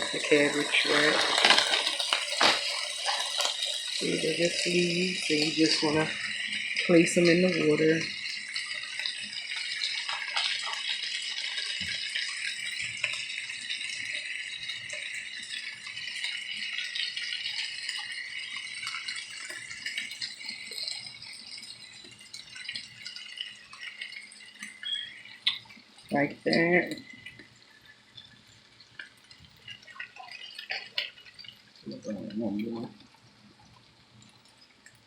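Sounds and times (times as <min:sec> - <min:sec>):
hiss of pot and frying pan: 0:00.0 - 0:22.8.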